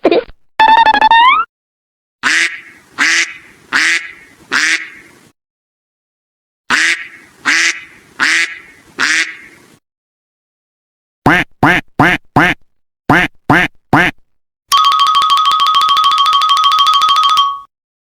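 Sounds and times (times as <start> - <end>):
duck quacking: 2.2 - 5.2, 6.7 - 9.7, 11.3 - 14.2.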